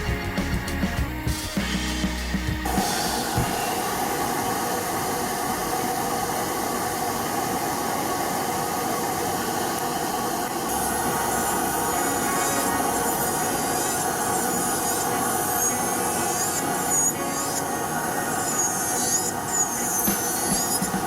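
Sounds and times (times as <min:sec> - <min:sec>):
nail drill whining: 0:09.6 - 0:21.0.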